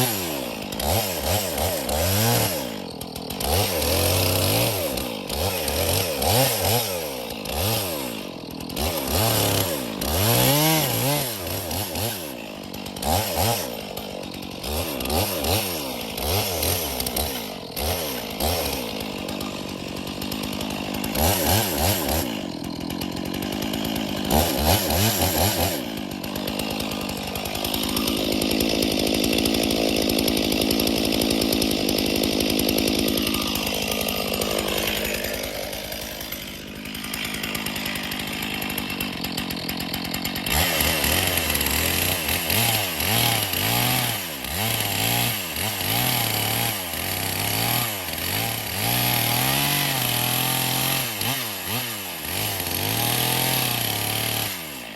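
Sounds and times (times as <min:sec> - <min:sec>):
chainsaw cutting wood: 0:00.0 - 0:54.9.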